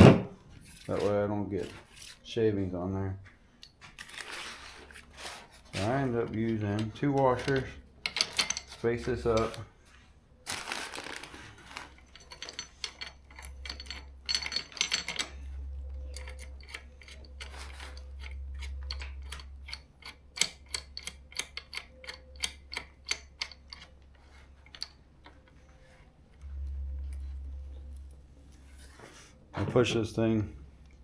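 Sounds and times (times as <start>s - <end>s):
metal hardware clicking and clinking: 5.8s - 9.7s, 10.8s - 25.8s.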